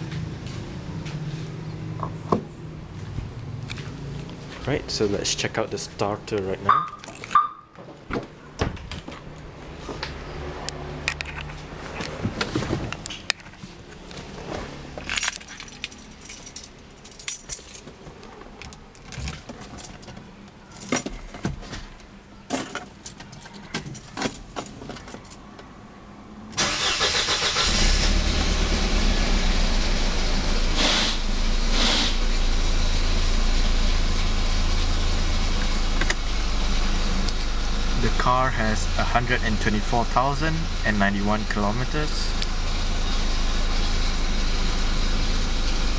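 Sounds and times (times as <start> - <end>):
car engine cranking and starting: 26.5 - 45.9
car engine idling: 26.6 - 45.9.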